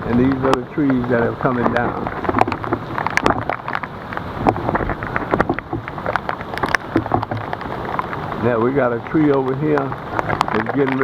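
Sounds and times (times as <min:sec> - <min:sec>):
hurricane wind buffeting microphone: 0:00.0 - 0:11.0
rain: 0:00.0 - 0:11.0.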